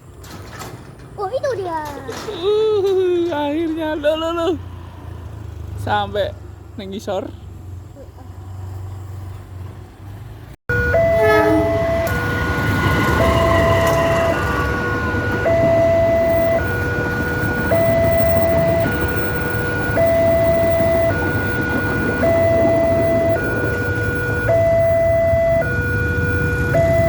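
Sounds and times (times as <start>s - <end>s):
low train rumble: 0.0s - 27.0s
two-tone crossing warning siren: 10.7s - 27.0s.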